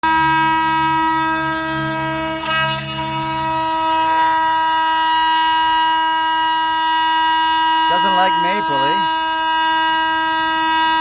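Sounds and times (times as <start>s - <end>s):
oscillating multitool buzzing: 0.0s - 11.0s.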